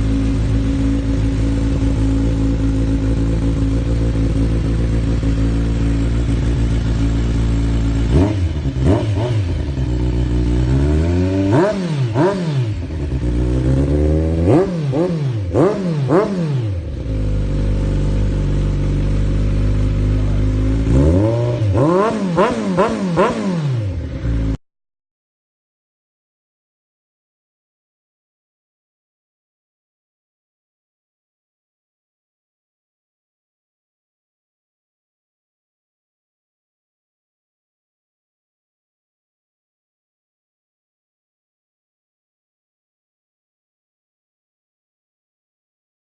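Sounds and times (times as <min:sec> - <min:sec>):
motorcycle engine idling and revving: 0:00.0 - 0:24.6.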